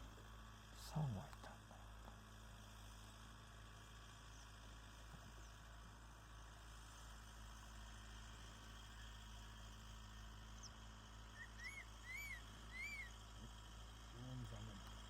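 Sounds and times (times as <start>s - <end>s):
faint background hum: 0.0s - 15.0s
eagle whistled calls: 10.6s - 13.2s.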